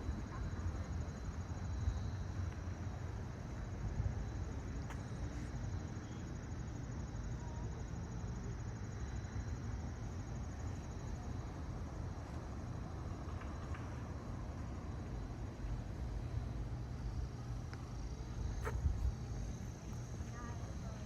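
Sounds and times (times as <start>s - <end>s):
crickets trilling: 0.0s - 21.0s
wind rumble on microphone: 18.6s - 19.4s.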